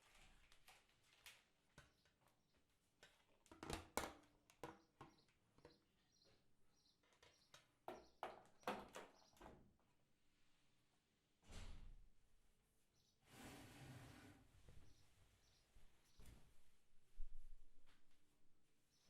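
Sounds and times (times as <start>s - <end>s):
knocks and clicks of handling things: 7.0s - 9.6s.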